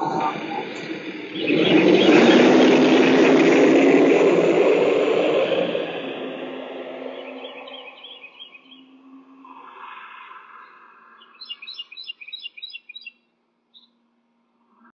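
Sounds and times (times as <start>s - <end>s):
bird chirping: 0.0s - 4.0s, 6.9s - 9.0s, 10.6s - 14.0s.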